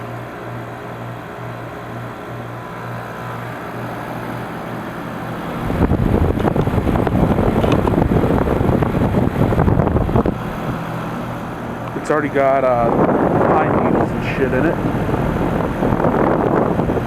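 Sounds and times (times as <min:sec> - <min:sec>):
heat pump compressor and fan hum: 0:00.0 - 0:17.0
wind rushing on microphone: 0:05.5 - 0:11.3, 0:11.9 - 0:17.0.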